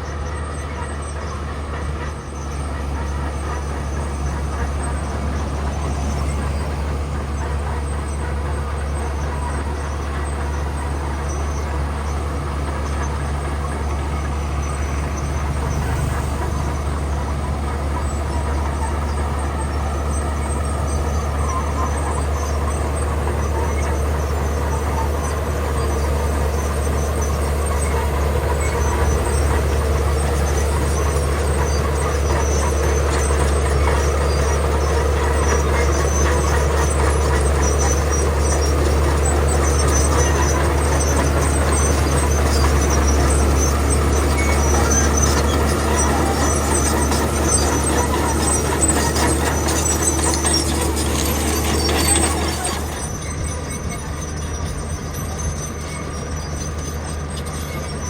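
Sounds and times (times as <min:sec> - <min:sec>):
bulldozer diesel engine under load: 0:00.0 - 0:58.0
gravel being pushed: 0:44.5 - 0:53.0.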